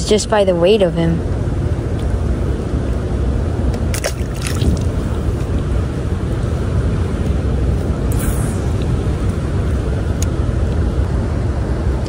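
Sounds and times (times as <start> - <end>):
water rushing over spillway: 3.8 - 10.0.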